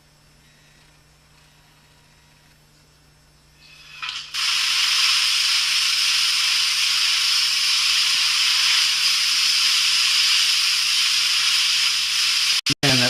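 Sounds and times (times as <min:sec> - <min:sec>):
plasma cutter torch hissing: 0:03.6 - 0:13.0.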